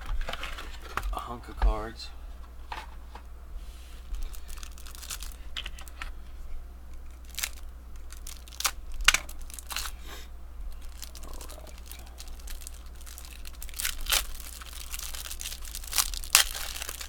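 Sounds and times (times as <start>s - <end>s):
plastic wrapper crinkling and tearing: 4.0s - 6.1s, 6.9s - 10.0s, 10.7s - 17.0s.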